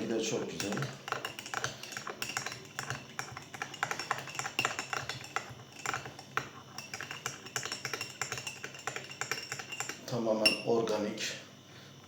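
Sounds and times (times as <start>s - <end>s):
teaspoon clinking against glass: 0.4s - 11.0s.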